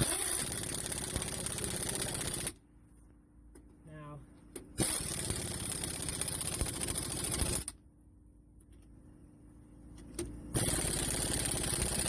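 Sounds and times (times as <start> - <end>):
impact wrench rattling: 10.6 - 12.0.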